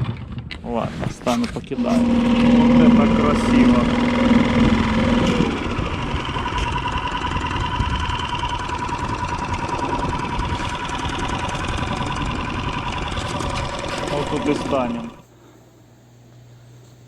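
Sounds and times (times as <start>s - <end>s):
outboard motor running: 1.6s - 15.2s.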